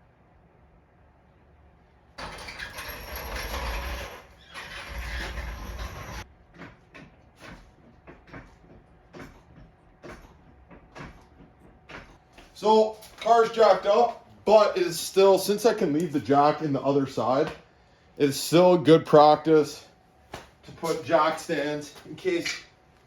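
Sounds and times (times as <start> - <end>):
metal stands scraping on floor: 2.2 - 6.3.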